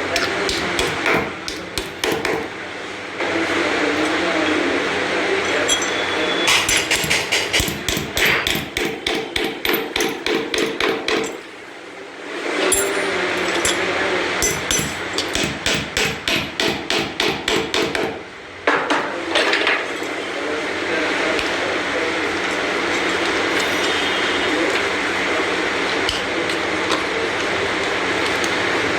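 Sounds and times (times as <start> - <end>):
hammer striking: 0.1 - 2.5, 6.5 - 11.5, 12.7 - 19.0.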